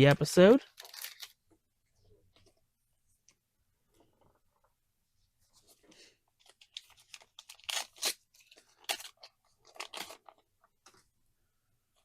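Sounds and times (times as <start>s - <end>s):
foil wrapper tearing and crinkling: 0.7s - 1.4s, 6.7s - 10.4s.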